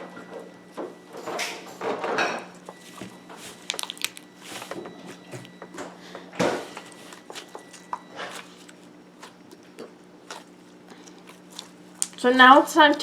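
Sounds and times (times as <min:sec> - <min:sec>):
slime popping: 0:02.9 - 0:05.5
slime crackling and clicking: 0:03.4 - 0:04.3, 0:11.5 - 0:12.2.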